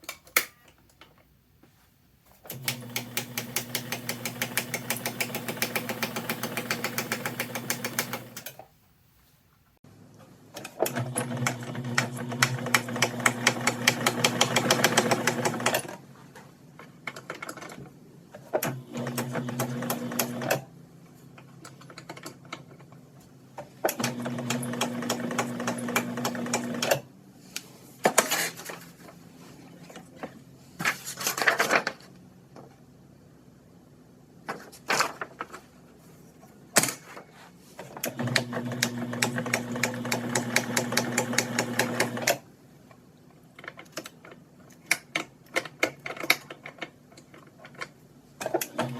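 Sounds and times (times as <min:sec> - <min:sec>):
sewing machine stitching: 0:02.5 - 0:08.6, 0:10.8 - 0:16.0, 0:18.6 - 0:20.7, 0:23.9 - 0:27.0, 0:37.9 - 0:42.4, 0:48.4 - 0:48.9.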